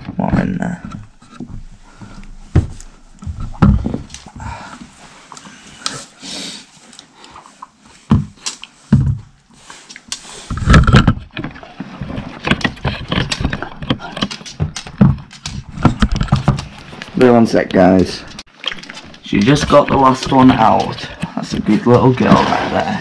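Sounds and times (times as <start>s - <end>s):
knocks scrapes and taps: 7.0s - 22.4s.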